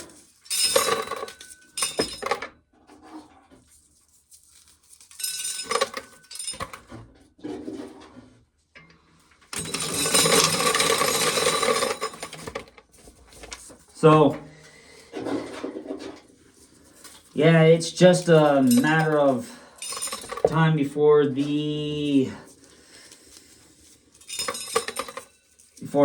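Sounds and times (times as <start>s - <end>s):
dried corn kernels rattling: 9.6s - 14.2s, 16.6s - 26.0s.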